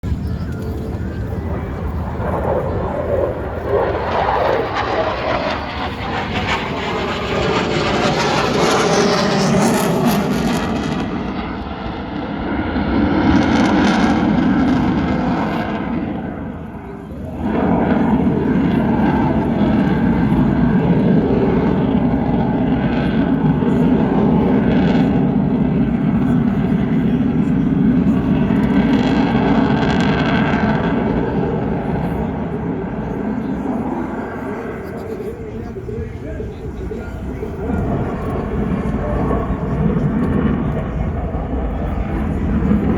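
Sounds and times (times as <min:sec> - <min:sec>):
jet engines roaring: 0:00.0 - 0:42.9.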